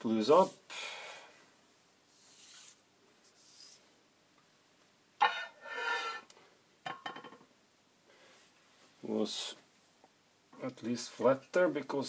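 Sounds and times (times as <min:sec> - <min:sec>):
soft metal rubbing strokes: 0:02.1 - 0:03.9, 0:05.2 - 0:06.3
squeaky metal-on-metal scrape: 0:05.2 - 0:06.3.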